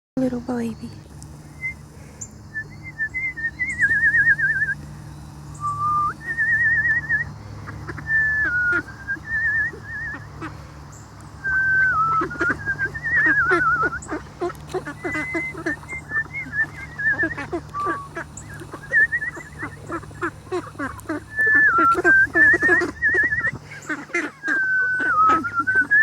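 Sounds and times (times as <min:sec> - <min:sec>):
person whistling a tune: 0:05.6 - 0:07.3, 0:11.4 - 0:14.0, 0:21.4 - 0:23.6, 0:24.4 - 0:26.0.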